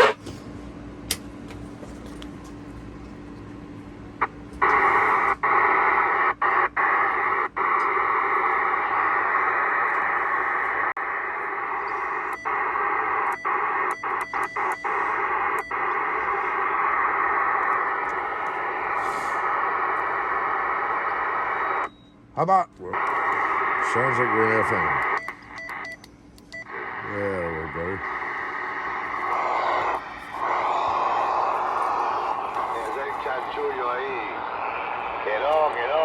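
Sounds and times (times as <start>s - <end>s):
radio static hiss: 0.0s - 0.2s, 4.2s - 21.9s, 22.8s - 25.8s, 26.6s - 36.0s
radio clicks: 6.4s - 8.7s, 11.2s - 21.9s, 24.8s - 27.0s, 28.0s - 36.0s.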